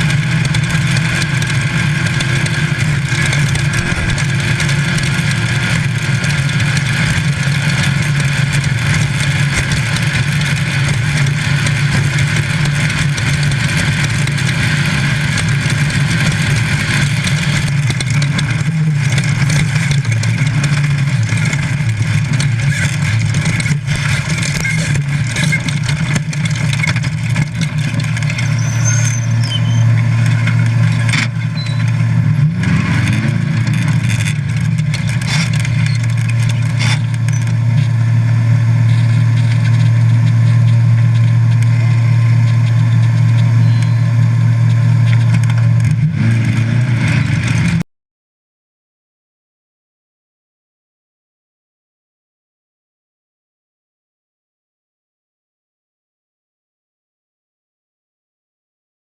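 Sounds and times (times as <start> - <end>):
race car engine under load: 0.0 - 47.8
chassis knocks: 3.2 - 5.2.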